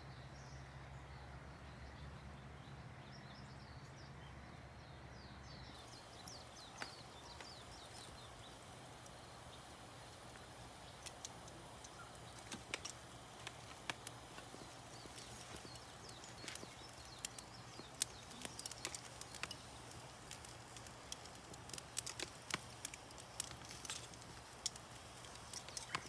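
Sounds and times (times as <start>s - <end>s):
small birds chirping: 0.0s - 26.0s
sharp clicks: 5.8s - 26.0s.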